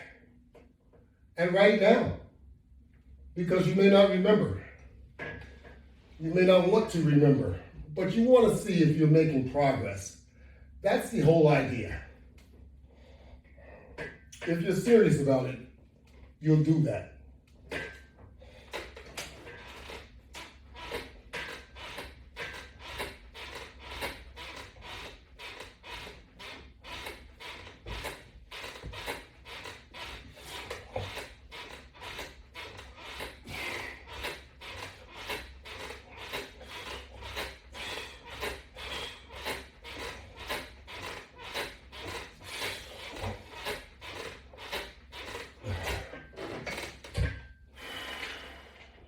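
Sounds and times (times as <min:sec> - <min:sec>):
rhythmic rubbing and scraping: 0:18.5 - 0:47.2.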